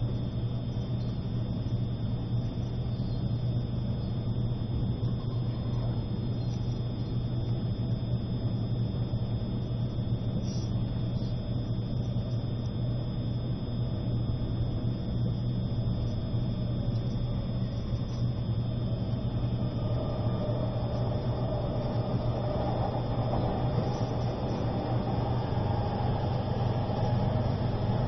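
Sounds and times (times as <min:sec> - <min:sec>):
train running rumble inside car: 0:05.0 - 0:08.0, 0:16.0 - 0:28.0.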